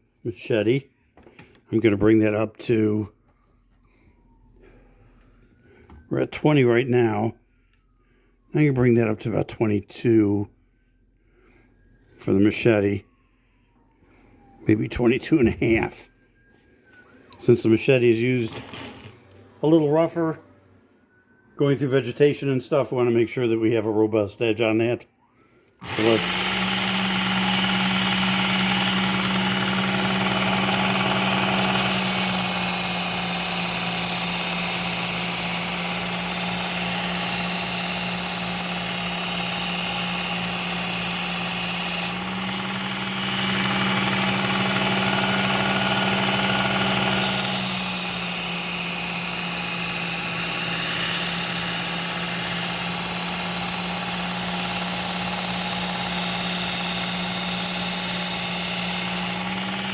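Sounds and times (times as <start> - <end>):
belt sharpener motor hum: 25.8 - 59.9.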